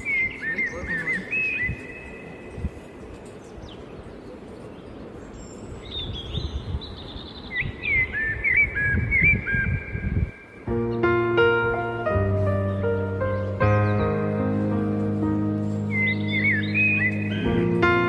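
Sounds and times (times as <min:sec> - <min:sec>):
small birds chirping: 0:00.0 - 0:18.0
soft piano music: 0:10.6 - 0:18.0.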